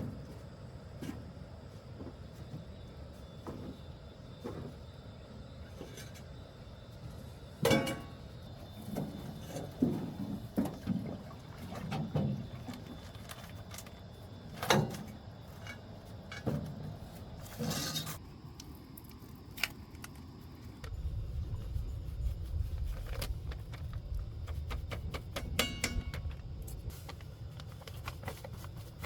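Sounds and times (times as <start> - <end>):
scraping rustle: 5.6 - 18.2, 21.1 - 29.0
objects knocking and clattering: 7.6 - 8.3.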